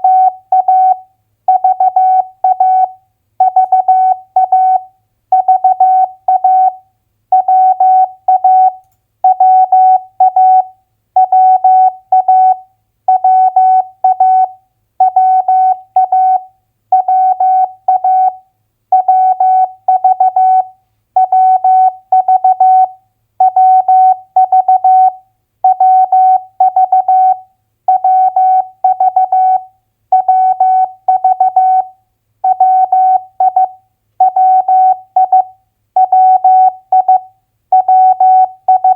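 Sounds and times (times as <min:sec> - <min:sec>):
morse code tone: 0:32.5 - 0:37.2, 0:37.8 - 0:38.9.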